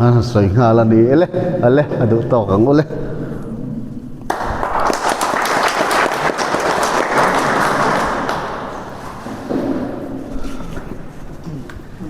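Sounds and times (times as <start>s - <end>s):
audience clapping: 4.3s - 9.1s.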